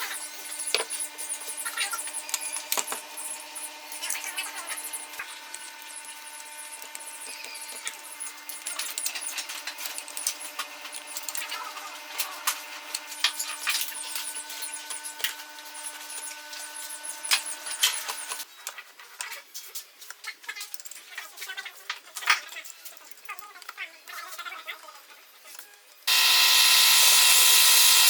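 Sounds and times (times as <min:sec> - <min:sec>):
electric power tool humming: 0:00.0 - 0:18.4, 0:26.1 - 0:28.0
scraping and ticking: 0:00.0 - 0:18.4.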